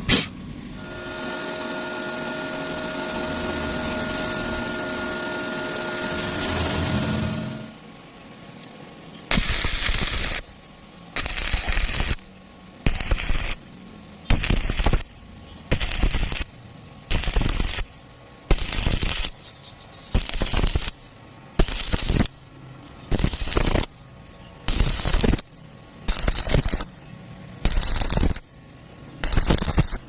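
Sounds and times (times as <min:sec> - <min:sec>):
arc welding crackle: 0:09.2 - 0:30.0.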